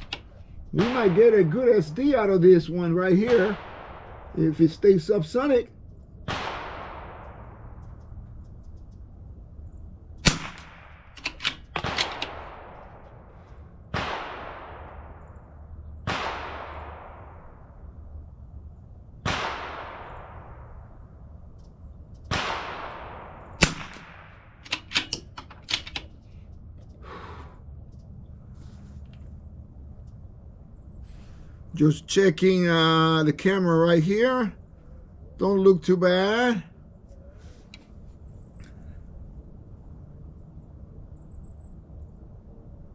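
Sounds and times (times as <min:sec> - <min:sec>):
rifle bolt clicks: 0:00.0 - 0:00.4, 0:10.2 - 0:12.9, 0:23.6 - 0:26.2
distant gunshots with echo: 0:00.0 - 0:05.6, 0:06.2 - 0:08.2, 0:10.2 - 0:17.9, 0:19.2 - 0:21.2, 0:22.3 - 0:26.2
rifle shot cracks: 0:00.0 - 0:05.6, 0:06.2 - 0:08.2, 0:10.2 - 0:15.4, 0:16.0 - 0:17.8, 0:19.2 - 0:21.0, 0:22.3 - 0:26.2.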